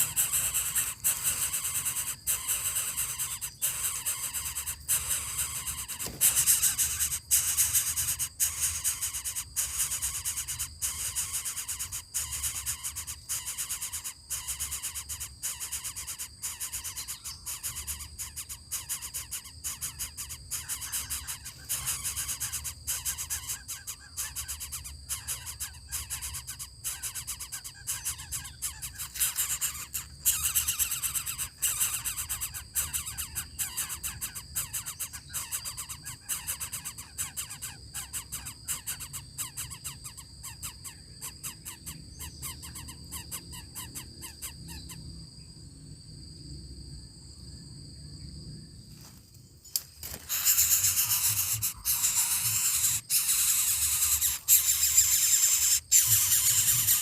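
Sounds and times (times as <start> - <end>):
steady high-pitched hiss: 0.0 - 57.0.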